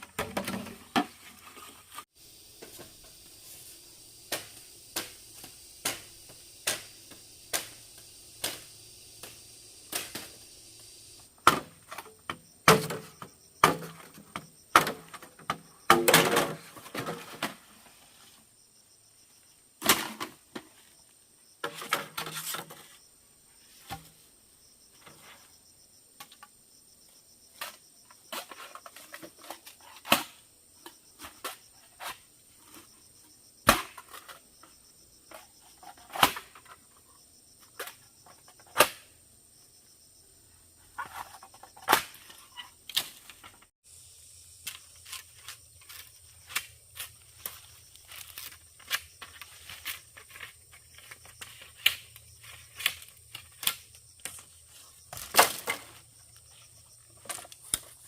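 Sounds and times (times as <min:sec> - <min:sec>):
scraping rustle: 0:40.8 - 0:43.7, 0:44.8 - 0:58.0.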